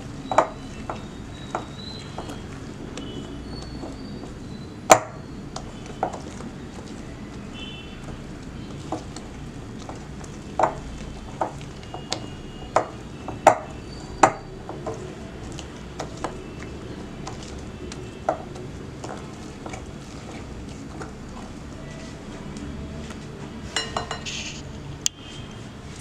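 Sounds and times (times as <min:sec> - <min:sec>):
utensil knocking against bowl: 0:10.6 - 0:15.1, 0:23.8 - 0:24.3.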